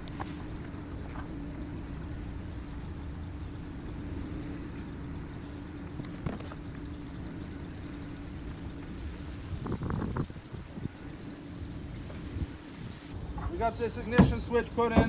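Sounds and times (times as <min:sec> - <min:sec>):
truck engine idling: 0:00.0 - 0:15.0
light knocks: 0:14.1 - 0:15.0.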